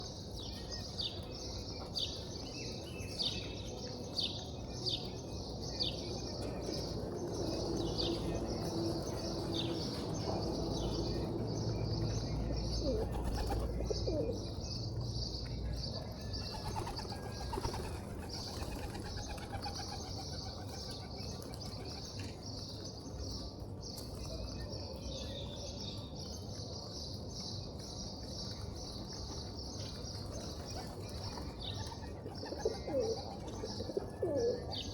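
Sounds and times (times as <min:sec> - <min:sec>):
small birds chirping: 0:00.0 - 0:34.9
pigeons cooing: 0:12.6 - 0:14.6, 0:30.4 - 0:34.9.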